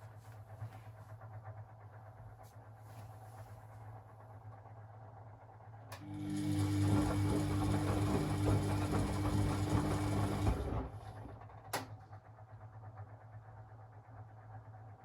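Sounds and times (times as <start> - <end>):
washing machine drum whirring: 5.8 - 15.0.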